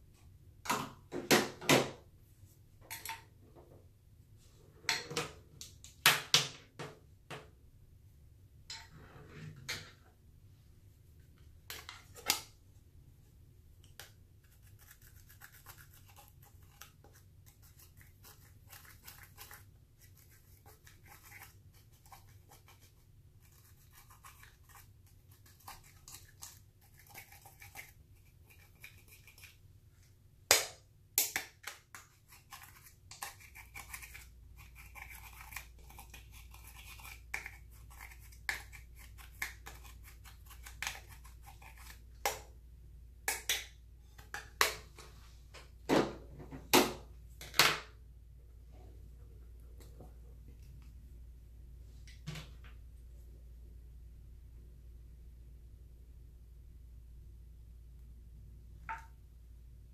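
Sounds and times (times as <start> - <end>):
scratching and scraping slime: 14.3 - 29.7, 31.5 - 42.2.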